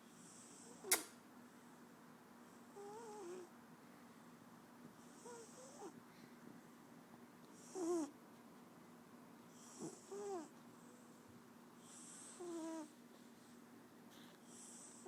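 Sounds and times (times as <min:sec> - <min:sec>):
sharp click: 0:00.9 - 0:01.2
cat snoring: 0:02.6 - 0:03.5, 0:05.0 - 0:06.0, 0:07.6 - 0:08.1, 0:09.5 - 0:11.0, 0:11.8 - 0:12.9.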